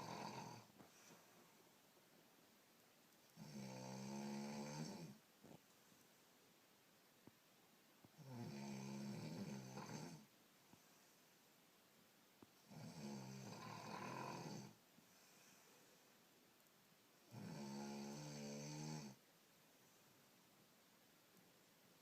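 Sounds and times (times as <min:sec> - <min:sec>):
woman snoring: 0:00.0 - 0:00.7, 0:03.4 - 0:05.2, 0:08.2 - 0:10.3, 0:12.7 - 0:14.8, 0:17.3 - 0:19.2.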